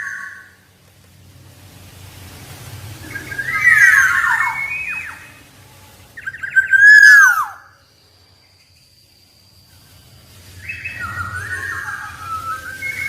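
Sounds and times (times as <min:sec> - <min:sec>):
oriole whistled notes: 0:06.2 - 0:07.8, 0:10.5 - 0:13.0.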